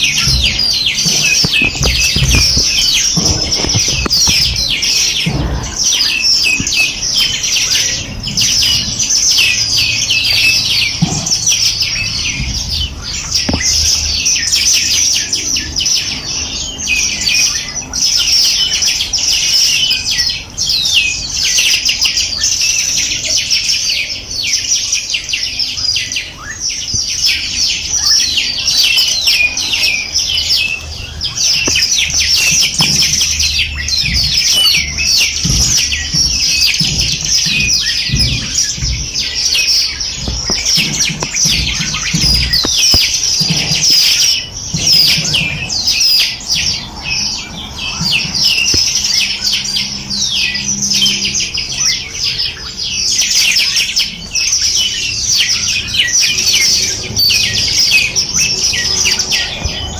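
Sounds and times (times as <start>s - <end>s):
small birds chirping: 0.0s - 59.9s.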